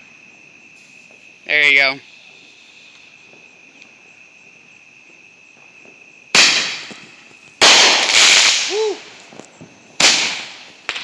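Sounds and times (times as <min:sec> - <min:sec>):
crickets chirping: 0:00.0 - 0:11.0
roman candle shots: 0:05.6 - 0:11.0.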